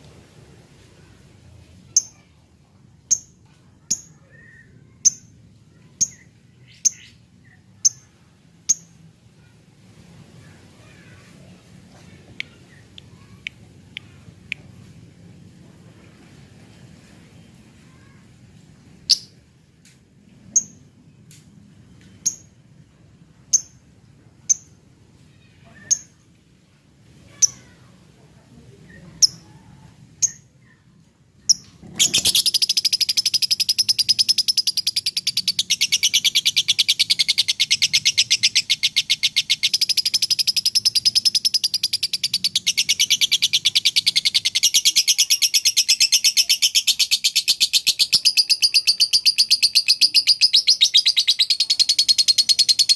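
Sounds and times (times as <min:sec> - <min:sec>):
lovebird chirping and trilling: 0:03.1 - 0:08.1, 0:19.1 - 0:19.4, 0:31.5 - 0:52.9.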